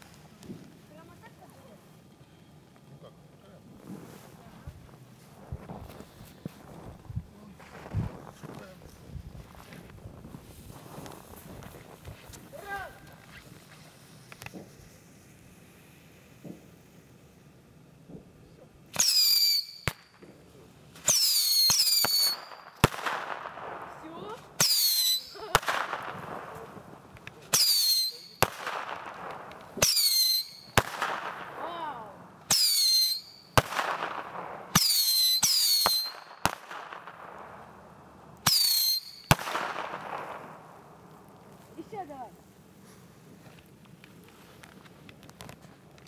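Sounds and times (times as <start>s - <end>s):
crackling hiss: 0.0s - 46.0s
firework bangs: 7.6s - 17.3s, 18.0s - 42.4s
firework whistles: 10.4s - 17.1s, 18.4s - 26.8s, 27.4s - 31.7s, 32.4s - 37.2s, 38.4s - 40.5s.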